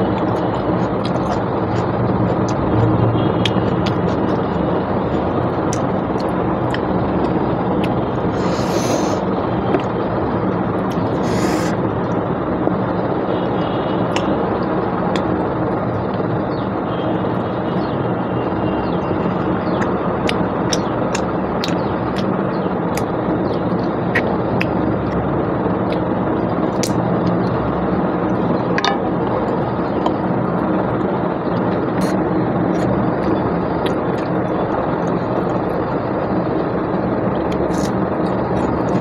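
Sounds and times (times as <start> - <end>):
person eating with clicks and smacks: 0.0 - 10.0, 10.8 - 12.2, 14.1 - 14.4, 15.1 - 15.5, 19.7 - 25.2, 25.8 - 26.1, 26.7 - 27.5, 28.3 - 35.8, 37.4 - 39.0
loud droning hum: 0.0 - 39.0.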